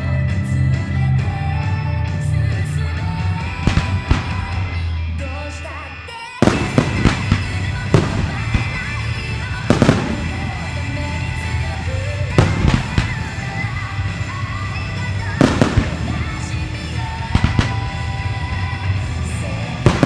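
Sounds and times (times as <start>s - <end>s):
music playing: 0.0s - 20.0s
fireworks bangs: 3.5s - 4.8s, 6.4s - 20.0s.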